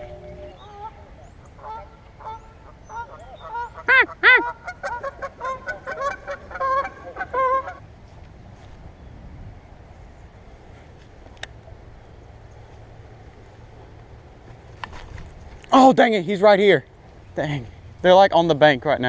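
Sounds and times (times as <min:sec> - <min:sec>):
geese honking: 0:00.0 - 0:07.8.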